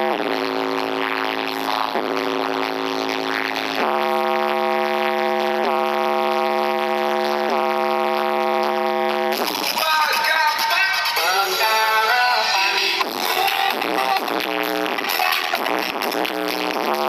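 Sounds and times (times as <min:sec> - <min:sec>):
buzzy electronic note: 0:00.0 - 0:17.0.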